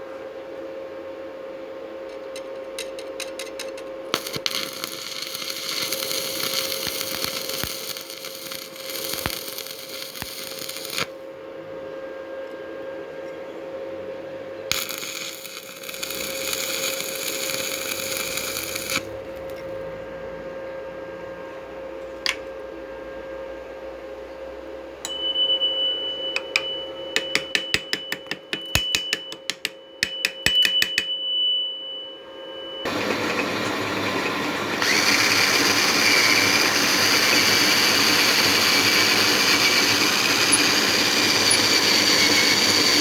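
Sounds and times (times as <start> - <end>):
harsh high hissing tool noise: 4.1 - 11.2, 14.7 - 19.4, 32.6 - 43.0
steady machine hum: 13.8 - 43.0.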